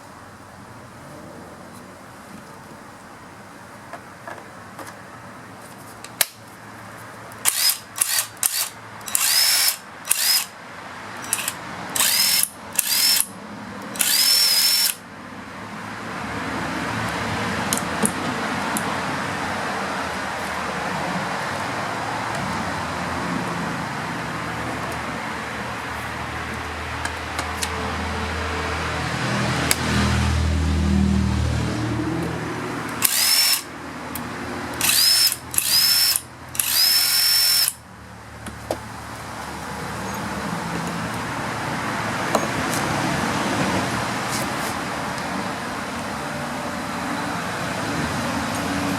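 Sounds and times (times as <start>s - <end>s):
impact driver motor whine: 7.5s - 10.5s, 11.3s - 13.3s, 14.0s - 15.0s, 33.0s - 33.6s, 34.8s - 37.8s.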